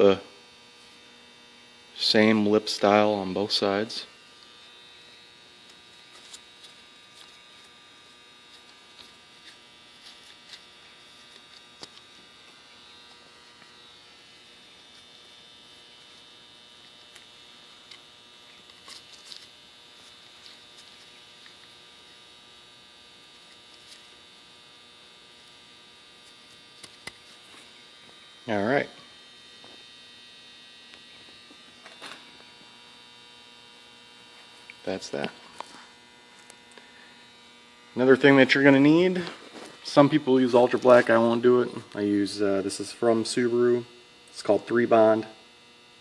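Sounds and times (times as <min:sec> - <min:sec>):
electrical mains hum: 0:00.0 - 0:46.0.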